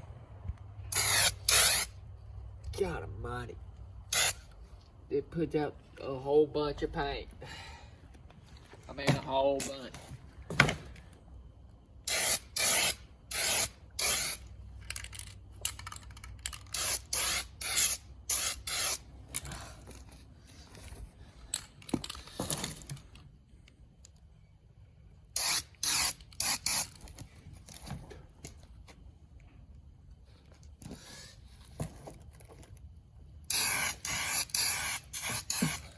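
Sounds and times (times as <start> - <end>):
spray can hissing bursts: 0.9 - 1.9, 12.1 - 14.4, 25.4 - 26.9, 33.5 - 35.9.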